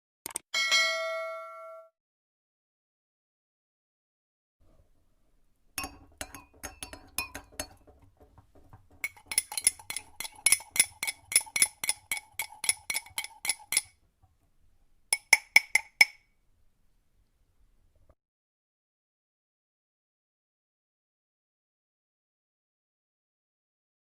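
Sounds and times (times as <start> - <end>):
metal spoon clinking in a cup: 5.8 - 8.0, 8.9 - 13.9, 15.1 - 16.2.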